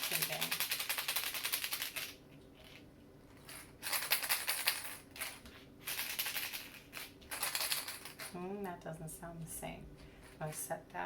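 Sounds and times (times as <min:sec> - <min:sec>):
buttons rattling in plastic eggs: 0:00.0 - 0:02.2.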